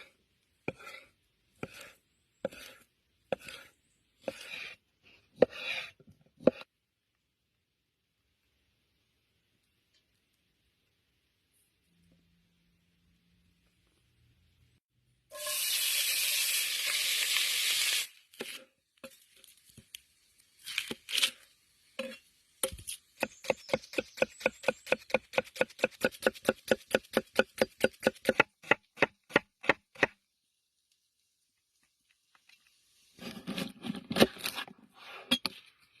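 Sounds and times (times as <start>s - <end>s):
knife chopping on cutting board: 23.2s - 30.1s.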